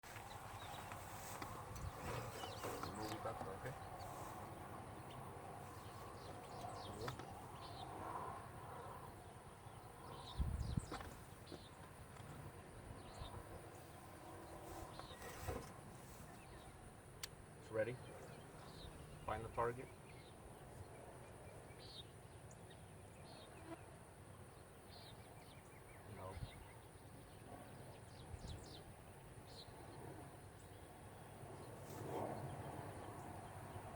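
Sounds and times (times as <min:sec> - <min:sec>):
bird chirps: 0:00.1 - 0:08.0
insect hum: 0:00.1 - 0:33.9.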